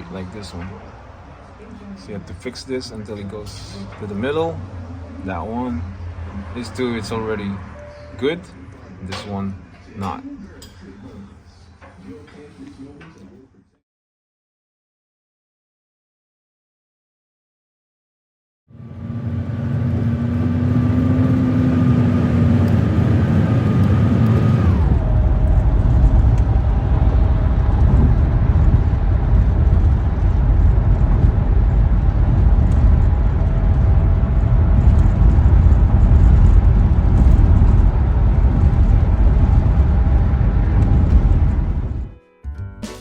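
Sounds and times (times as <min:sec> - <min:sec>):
road noise: 0:00.0 - 0:13.6, 0:18.7 - 0:42.2
car engine: 0:18.7 - 0:42.2.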